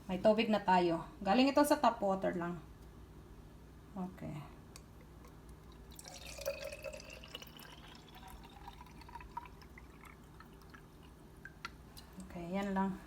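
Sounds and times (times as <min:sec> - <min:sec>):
water trickling into tank: 0:05.3 - 0:12.8.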